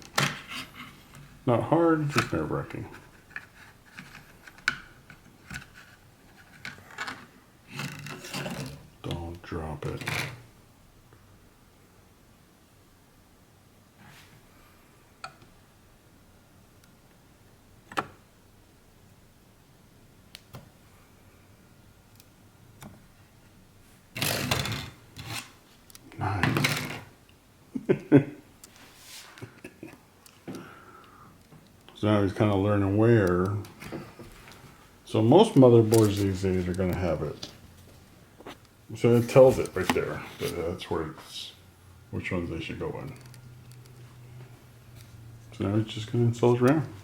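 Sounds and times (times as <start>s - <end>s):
rubbing and scraping: 5.5s - 8.9s, 24.2s - 25.6s.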